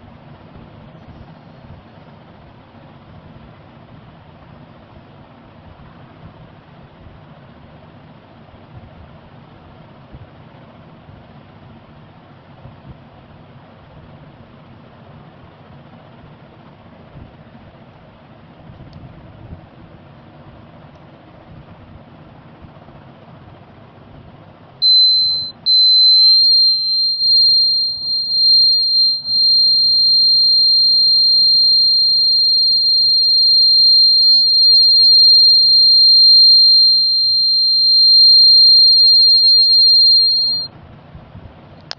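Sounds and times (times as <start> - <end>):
fire alarm buzzer tone: 24.8 - 40.7.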